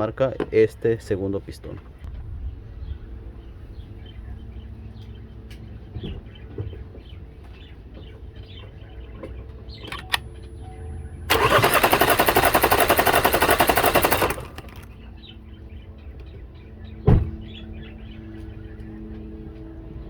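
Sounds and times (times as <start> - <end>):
car engine cranking: 9.8 - 10.2, 11.3 - 14.9
short thump: 17.0 - 17.4.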